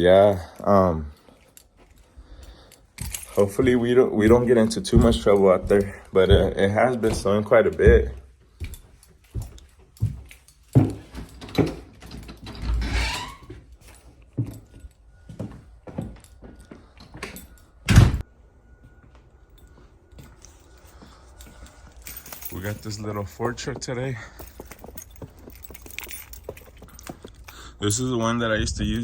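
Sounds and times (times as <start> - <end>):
jangling handling noises: 0.2 - 15.3, 16.0 - 17.8, 19.5 - 29.0
knocks and clunks: 3.6 - 8.3
faint steady high tone: 13.4 - 24.1.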